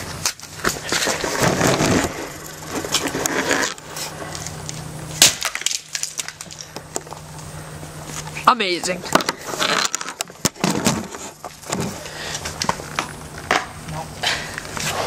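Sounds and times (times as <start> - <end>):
plastic cracking and snapping: 4.7 - 7.2.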